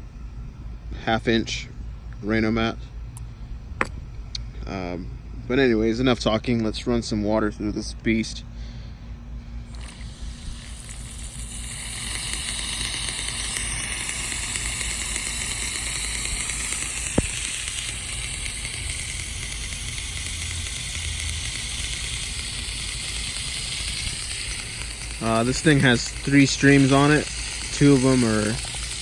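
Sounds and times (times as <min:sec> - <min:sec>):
sprinkler water spraying hiss: 0:09.7 - 0:29.0
sharp click: 0:11.9 - 0:22.5.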